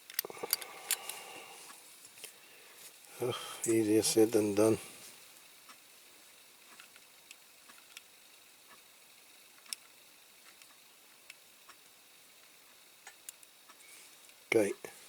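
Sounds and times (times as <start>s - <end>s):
small clicks of model parts: 0.0s - 1.2s, 6.7s - 8.1s, 9.6s - 11.8s, 13.0s - 14.4s.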